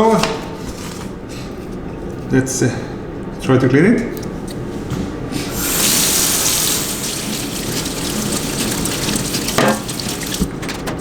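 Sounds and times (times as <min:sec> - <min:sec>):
water running from a tap: 0:05.5 - 0:11.0.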